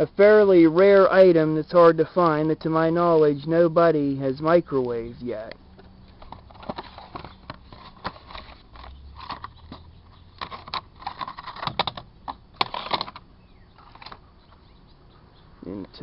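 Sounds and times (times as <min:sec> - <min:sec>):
small hard parts clicking and rattling: 0:05.8 - 0:14.2.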